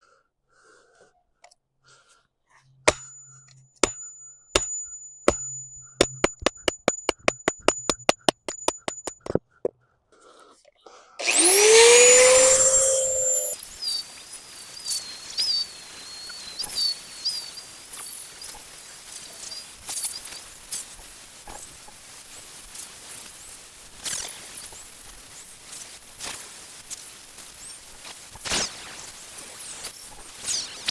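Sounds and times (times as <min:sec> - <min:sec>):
power tool motor whining: 0:11.2 - 0:30.9.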